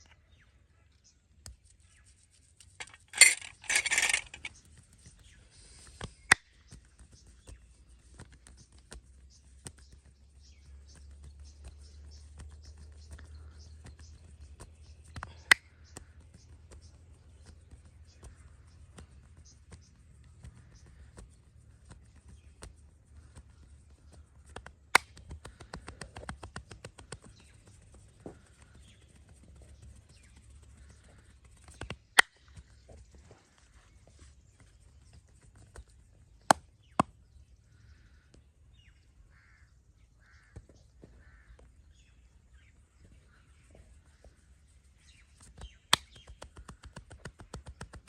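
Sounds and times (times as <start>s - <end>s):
hands patting and rubbing body: 4.4s - 37.2s, 45.0s - 48.0s.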